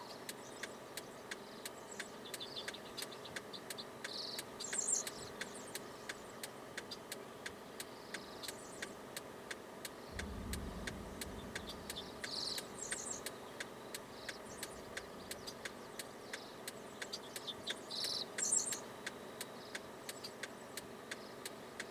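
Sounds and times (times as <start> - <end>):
low rumble: 10.1 - 15.7.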